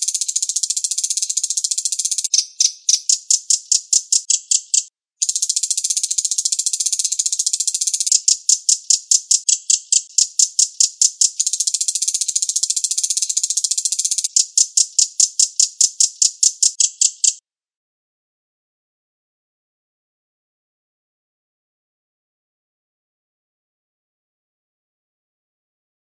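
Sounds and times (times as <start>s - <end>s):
bird buzzy trill: 0.0s - 17.4s.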